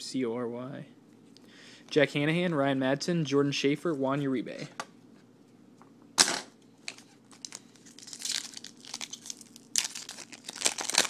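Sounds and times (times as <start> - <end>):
foil wrapper crinkling and tearing: 6.8 - 11.0.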